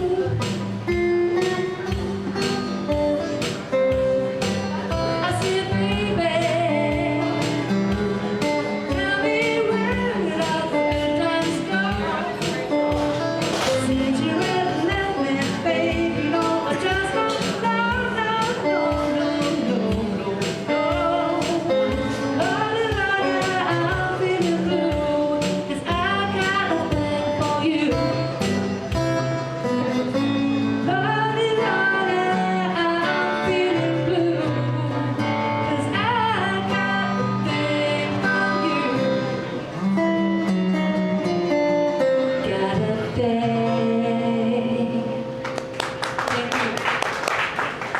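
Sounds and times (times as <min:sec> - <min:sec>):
woman singing: 0:00.0 - 0:00.6, 0:05.0 - 0:07.8, 0:08.4 - 0:13.0, 0:13.6 - 0:28.6, 0:30.2 - 0:39.6, 0:42.2 - 0:45.4, 0:46.2 - 0:47.0
guitar strumming: 0:00.0 - 0:46.8.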